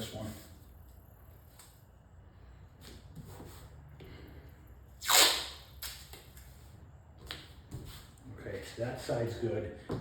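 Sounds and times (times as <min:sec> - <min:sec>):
sharp swish or rip: 0:05.0 - 0:06.0.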